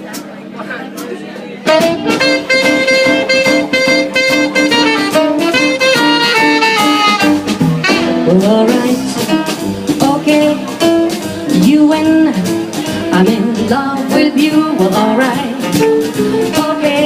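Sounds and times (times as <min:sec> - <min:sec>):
swing jazz band playing: 0:00.0 - 0:17.0
saxophone melody: 0:01.7 - 0:08.4.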